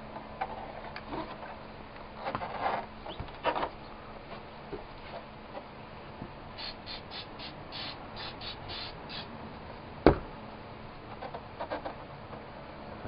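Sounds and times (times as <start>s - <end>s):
short raspy hisses: 6.6s - 9.3s.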